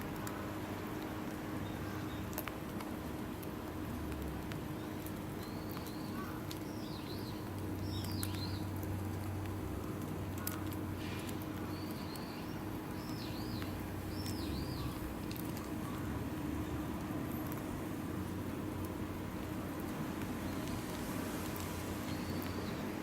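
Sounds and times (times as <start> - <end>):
songbird chirping: 11.7 - 15.0.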